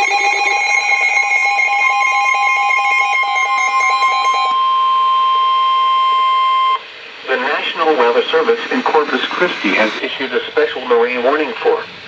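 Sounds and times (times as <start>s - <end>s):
pulsing electronic alarm beeps: 0.0s - 6.8s
steady electronic warning tone: 0.0s - 11.5s.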